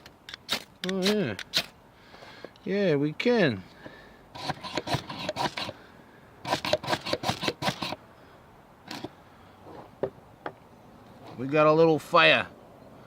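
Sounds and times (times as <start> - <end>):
file scraping ferro rod: 4.4 - 5.8, 6.5 - 8.0.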